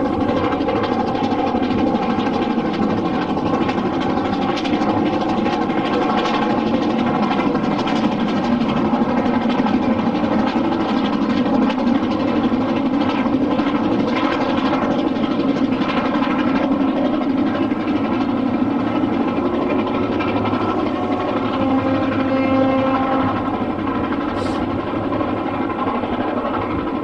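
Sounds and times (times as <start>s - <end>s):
steam train clattering on rails: 0.0s - 27.0s
steady tone: 17.5s - 26.7s.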